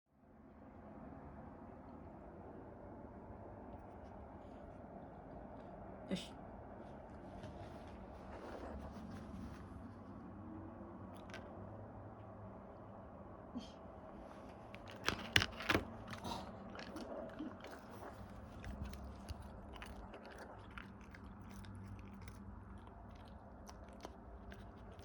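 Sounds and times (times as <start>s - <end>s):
dog crunching a treat: 11.0s - 11.6s, 14.5s - 25.0s.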